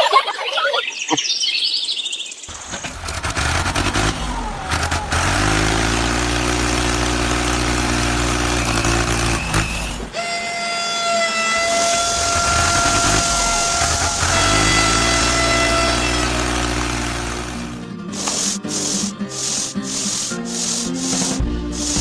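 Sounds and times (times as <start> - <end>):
vehicle engine humming: 2.5 - 10.2, 12.0 - 20.3.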